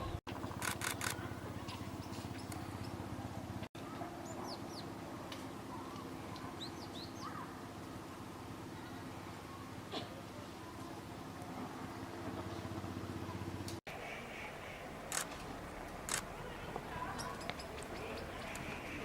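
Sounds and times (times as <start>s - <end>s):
small birds chirping: 0.8s - 5.0s, 5.7s - 7.6s, 16.1s - 19.0s.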